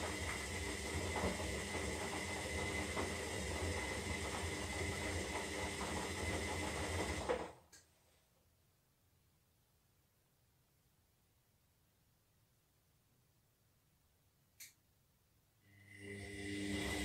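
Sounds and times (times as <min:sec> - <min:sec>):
washing machine motor hum: 0:00.0 - 0:07.7, 0:15.7 - 0:17.0.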